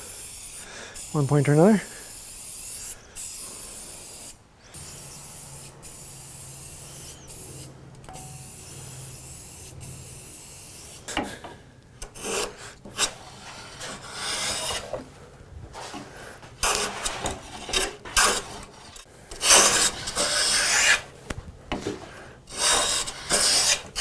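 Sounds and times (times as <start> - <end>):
steady hiss: 0.0 - 11.2.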